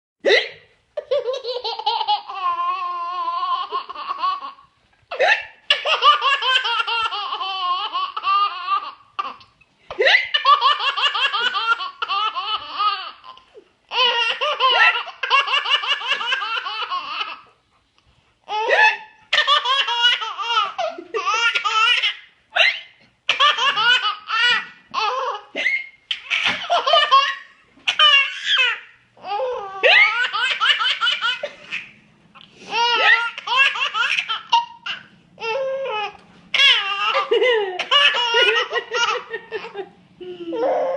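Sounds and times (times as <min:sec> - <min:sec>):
woman hiccuping: 0:00.2 - 0:00.6
baby belly-laughing: 0:00.3 - 0:17.6, 0:18.5 - 0:32.0, 0:32.7 - 0:40.9.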